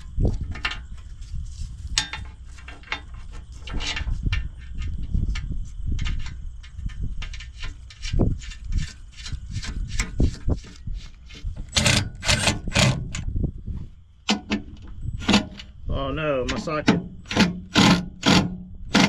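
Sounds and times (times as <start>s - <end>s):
tools clanking and rattling: 1.9s - 7.8s, 9.6s - 13.3s, 14.3s - 15.8s, 16.4s - 19.0s
hand tools clicking: 11.7s - 13.2s.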